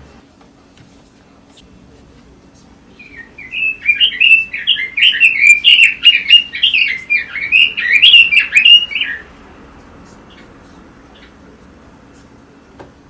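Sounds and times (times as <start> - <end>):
bird warbling song: 2.9 - 9.3, 10.1 - 11.5.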